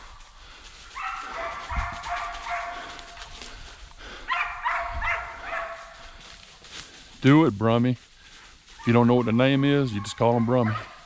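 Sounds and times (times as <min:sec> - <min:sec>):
dogs baying and barking: 0:00.9 - 0:06.4, 0:08.7 - 0:11.0.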